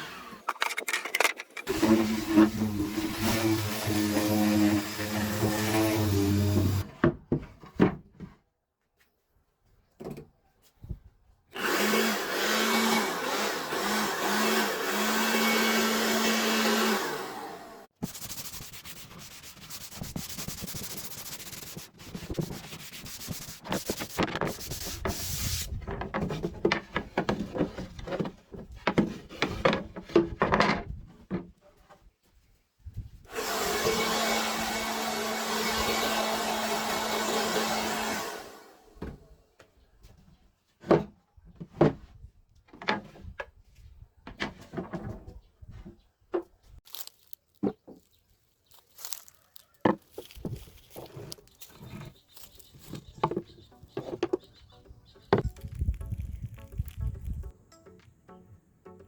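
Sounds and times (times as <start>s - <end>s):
power tool motor humming: 1.7s - 6.8s, 11.6s - 17.9s, 33.3s - 38.7s
rubbing and scraping on wood: 18.0s - 32.1s, 44.3s - 56.9s.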